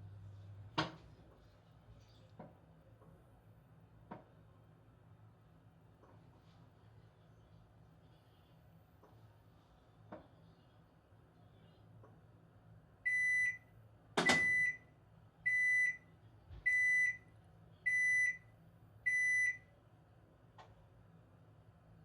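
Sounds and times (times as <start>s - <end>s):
washing machine buzzer beeps: 13.0s - 16.1s, 16.7s - 17.3s, 17.9s - 19.7s.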